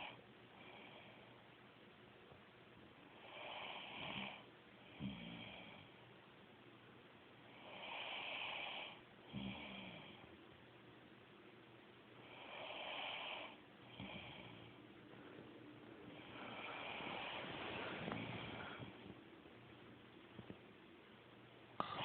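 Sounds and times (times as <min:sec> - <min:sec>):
woman snoring: 0:07.6 - 0:10.2, 0:12.3 - 0:14.7, 0:16.2 - 0:19.0.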